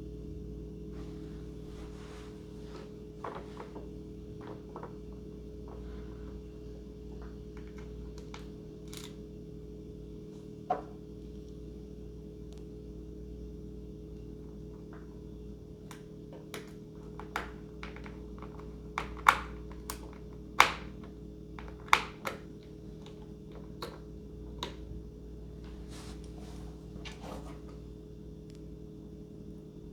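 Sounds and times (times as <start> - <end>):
steady low hum: 0.0 - 29.9
plastic parts clicking: 7.6 - 9.2, 15.9 - 24.0.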